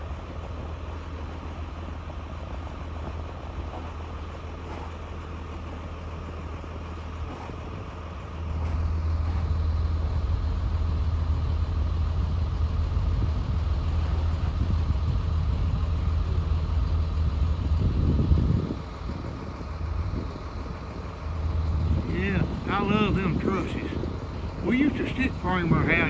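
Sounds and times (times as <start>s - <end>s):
crane engine running: 0.0s - 26.0s.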